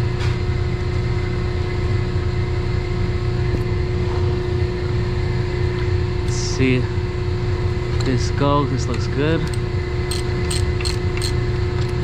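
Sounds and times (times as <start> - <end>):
constant hum tone: 0.0 - 12.0.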